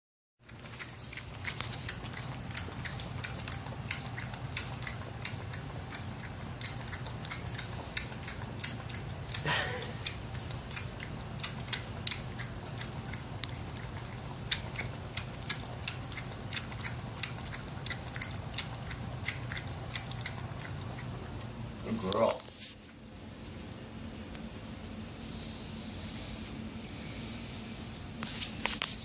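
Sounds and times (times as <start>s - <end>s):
puppy lapping water: 0.4s - 22.4s.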